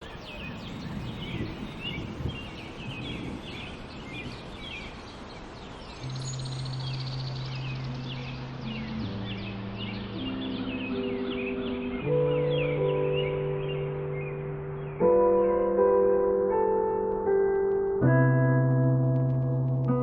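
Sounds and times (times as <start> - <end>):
small birds chirping: 0.0 - 15.6
steady outdoor hiss: 0.0 - 18.4
music with long low notes: 6.0 - 20.0.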